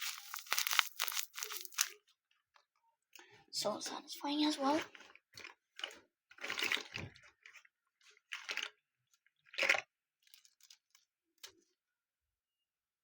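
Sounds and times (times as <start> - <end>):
fidget toy squishing: 0.0 - 1.9.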